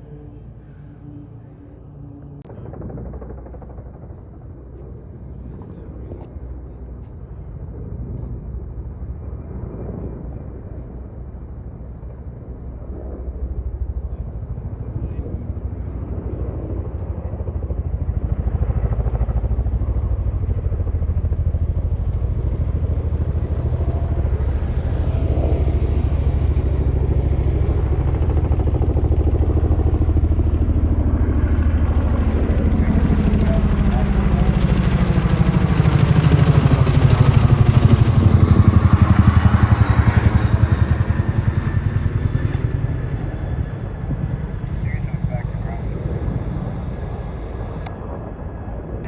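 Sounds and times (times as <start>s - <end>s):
road noise: 21.4s - 29.7s.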